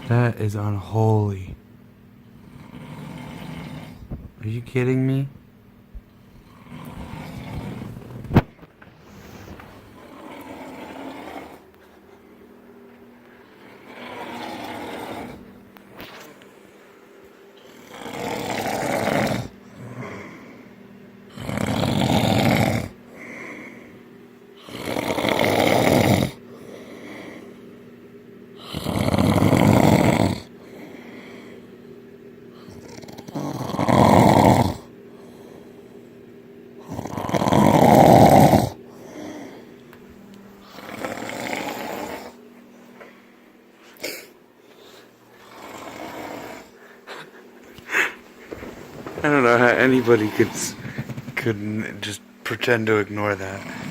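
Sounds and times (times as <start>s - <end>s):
person snoring loudly: 2.4s - 4.1s, 6.4s - 8.2s, 9.8s - 11.7s, 13.6s - 15.6s, 17.6s - 20.5s, 21.3s - 23.9s, 24.6s - 27.5s, 28.6s - 31.6s, 32.5s - 35.4s, 36.8s - 39.7s, 40.6s - 42.4s, 45.4s - 46.8s, 53.5s - 53.9s.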